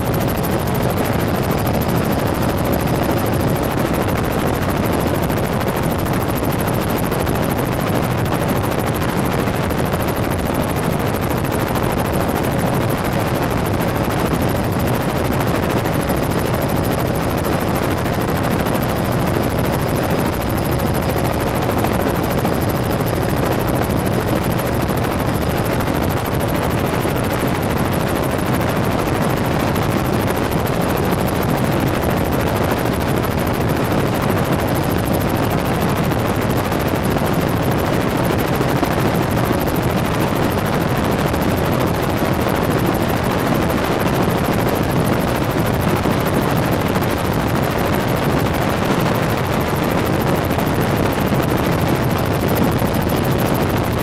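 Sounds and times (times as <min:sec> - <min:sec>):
faint steady whine: 0:00.0 - 0:54.0
helicopter engine and rotors: 0:00.0 - 0:54.0.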